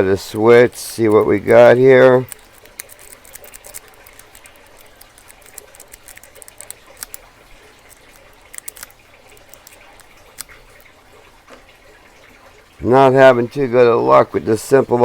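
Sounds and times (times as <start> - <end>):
lock pick metallic clicks: 0.2 - 10.9.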